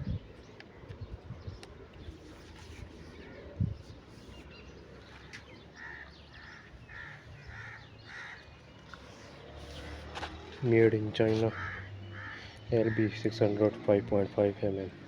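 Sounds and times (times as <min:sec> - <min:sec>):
bird calling: 0:03.0 - 0:10.5, 0:11.2 - 0:13.3.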